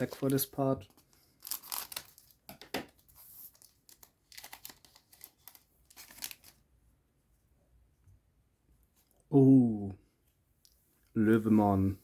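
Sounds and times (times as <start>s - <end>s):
card pack wrapper tearing and crinkling: 0.0s - 0.7s, 1.3s - 6.6s.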